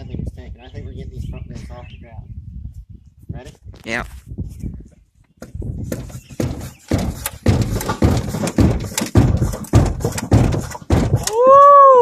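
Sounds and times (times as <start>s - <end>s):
thumps and knocks from car body: 5.4s - 11.5s
person whooping: 11.3s - 12.0s.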